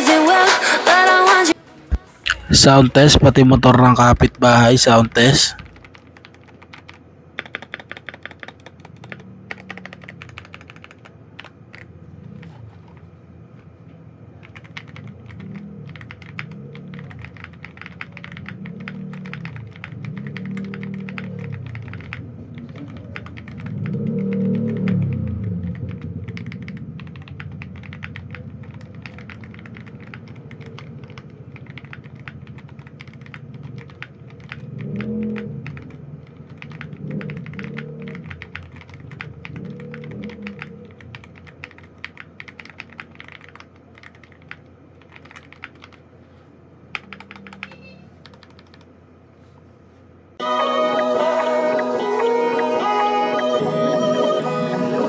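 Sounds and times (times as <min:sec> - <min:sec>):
mechanical keyboard typing: 0:03.7 - 0:13.1, 0:14.4 - 0:46.0, 0:46.9 - 0:48.9.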